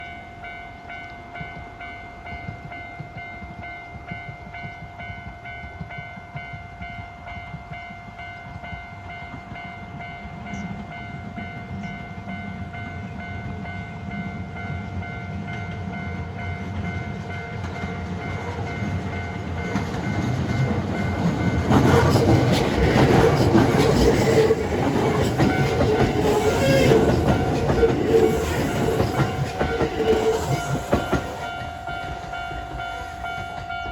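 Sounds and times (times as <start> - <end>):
level crossing warning bell: 0.0 - 33.9
train approaching: 0.0 - 33.9
wheels clattering on rails: 14.6 - 33.9.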